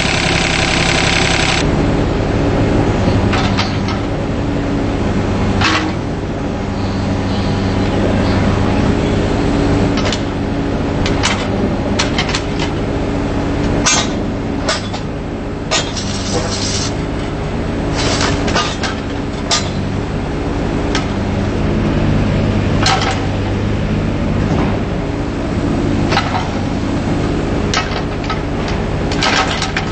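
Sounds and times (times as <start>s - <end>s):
diesel engine running: 0.0s - 29.9s
metal clanks and knocks: 3.2s - 4.1s, 5.6s - 6.0s, 13.8s - 15.1s, 15.7s - 17.4s, 18.0s - 20.0s, 22.8s - 23.4s, 26.0s - 26.8s, 27.7s - 29.9s.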